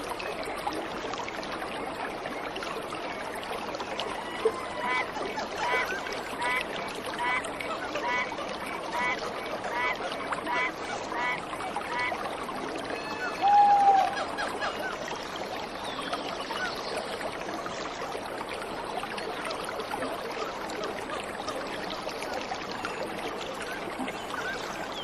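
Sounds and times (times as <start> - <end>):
bird calling: 12.9 - 15.0.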